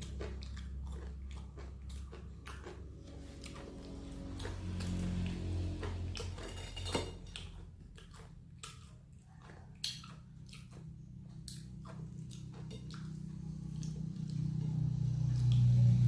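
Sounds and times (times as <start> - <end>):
wet mouth sounds: 0.0 - 4.8, 7.4 - 14.6
crunchy chewing: 0.0 - 16.0.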